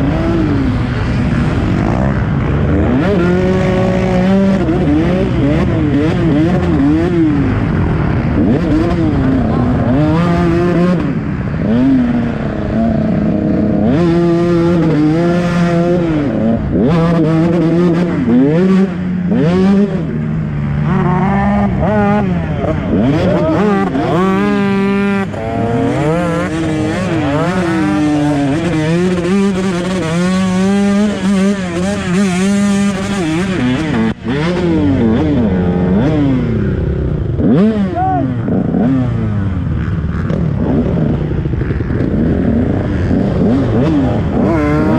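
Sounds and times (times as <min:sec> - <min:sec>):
dirt bike engine revving: 0:00.0 - 0:44.9.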